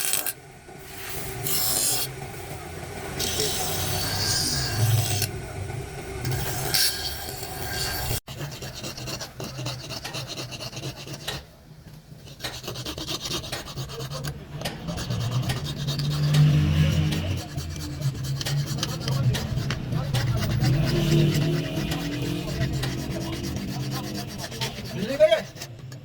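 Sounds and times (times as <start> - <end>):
rasping scraping on knife: 6.3 - 11.4, 12.2 - 26.0.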